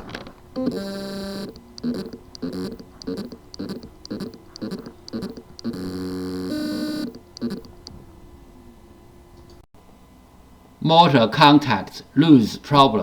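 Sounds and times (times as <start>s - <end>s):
hard drive motor stuttering: 0.0s - 8.6s.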